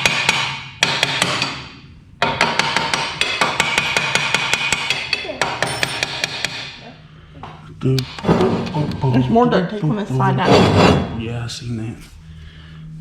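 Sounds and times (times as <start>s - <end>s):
hammer striking steel: 0.0s - 6.8s.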